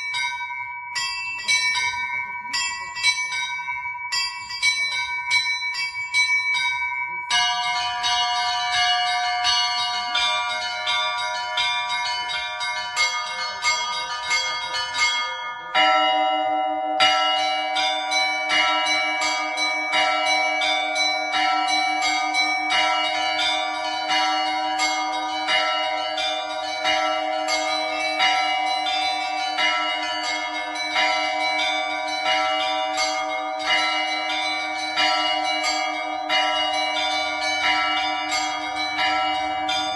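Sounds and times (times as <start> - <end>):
deep church bell: 0.0 - 39.9
small high-pitched bells ringing: 0.0 - 39.9.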